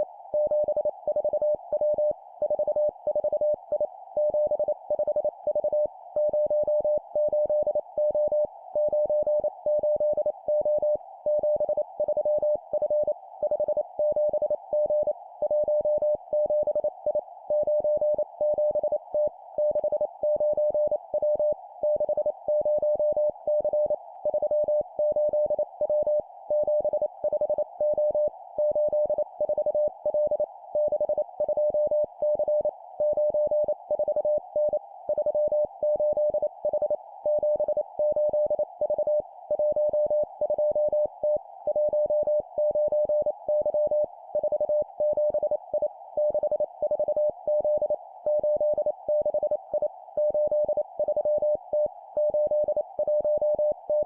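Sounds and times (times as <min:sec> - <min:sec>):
morse code beeps: 0:17.5 - 0:54.0.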